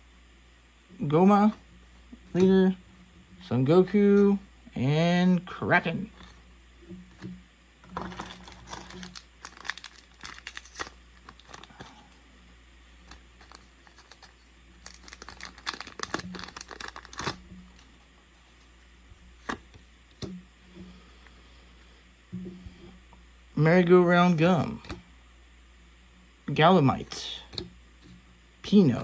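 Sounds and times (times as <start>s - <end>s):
foil wrapper tearing and crinkling: 7.9s - 12.0s, 13.0s - 17.9s.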